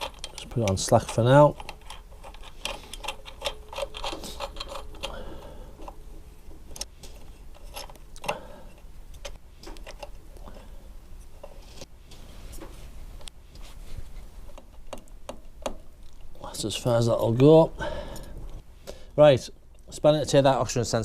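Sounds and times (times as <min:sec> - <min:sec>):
metal tool clicks and clinks: 0:00.0 - 0:05.2
faint ringing tone: 0:03.4 - 0:07.4.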